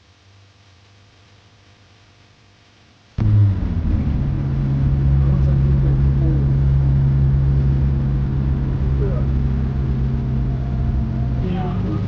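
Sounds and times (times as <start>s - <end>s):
vehicle engine humming: 3.2s - 12.0s.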